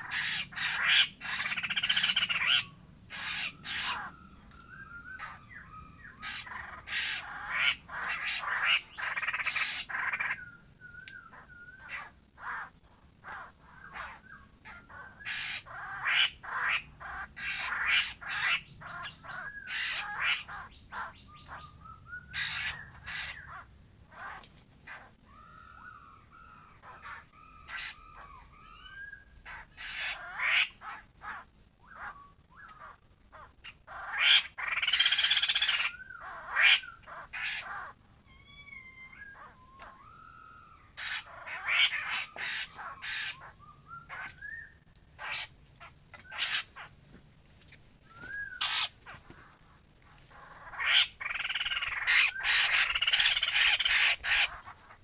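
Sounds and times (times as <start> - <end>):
bird harsh chattering calls: 0.0 - 47.0, 48.1 - 49.6, 50.3 - 55.0
bird wavy whistled notes: 3.3 - 6.4, 10.2 - 11.9, 42.2 - 44.9, 48.0 - 48.9.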